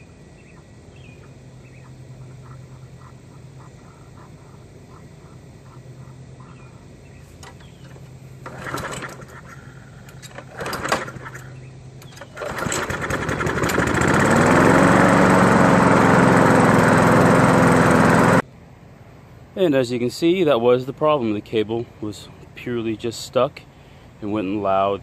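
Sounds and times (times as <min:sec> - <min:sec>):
lawn mower engine starting and running: 0:07.4 - 0:18.5.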